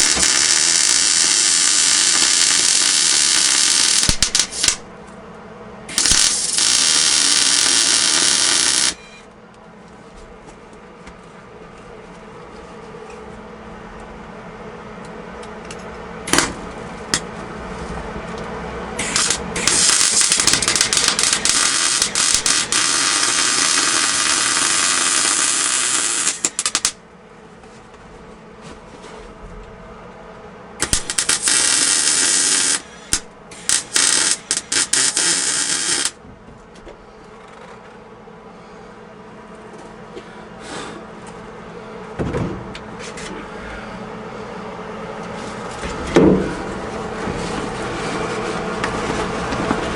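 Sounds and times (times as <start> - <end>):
power tool running: 0.0 - 4.8, 5.9 - 9.0, 19.0 - 26.9, 30.8 - 36.2
steady background hum: 0.0 - 49.9.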